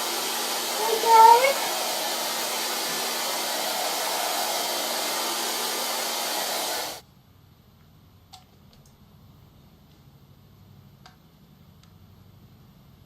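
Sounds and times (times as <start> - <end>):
hair dryer blowing: 0.0 - 7.0.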